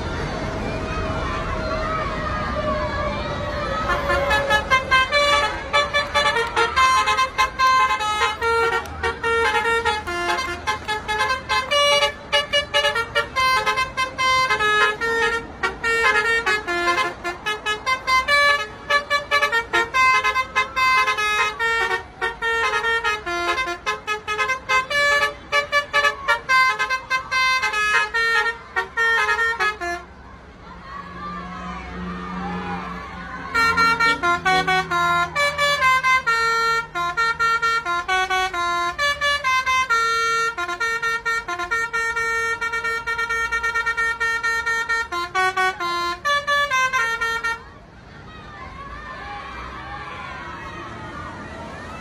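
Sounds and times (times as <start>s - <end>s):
multi-tone musical air horn: 3.7s - 30.1s, 32.0s - 47.7s.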